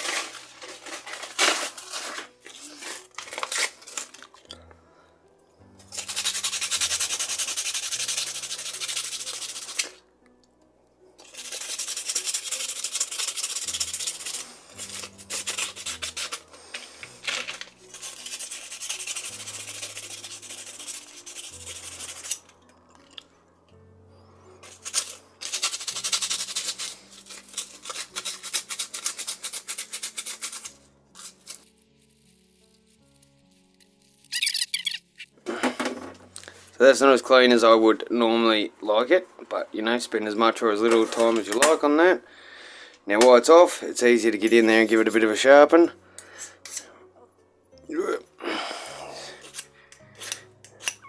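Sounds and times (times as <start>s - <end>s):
faint background music: 0.0s - 51.0s
steel blade scrubbed with abrasive: 5.9s - 10.0s, 11.2s - 22.5s.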